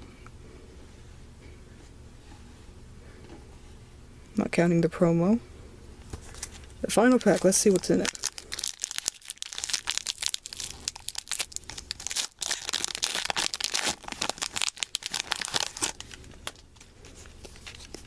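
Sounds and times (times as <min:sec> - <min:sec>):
foil wrapper crinkling and tearing: 0:06.2 - 0:18.0.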